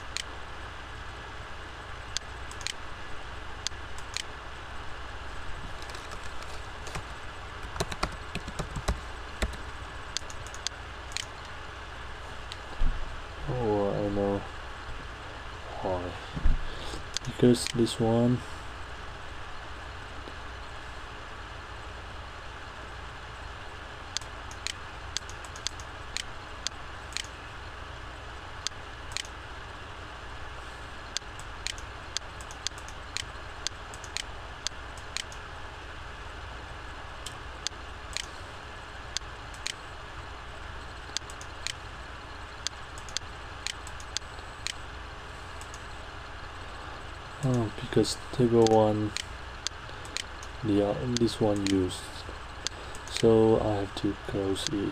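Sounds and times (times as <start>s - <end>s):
low hum: 0.0s - 54.9s
mouse and keyboard clicks: 27.1s - 27.4s, 31.2s - 34.3s.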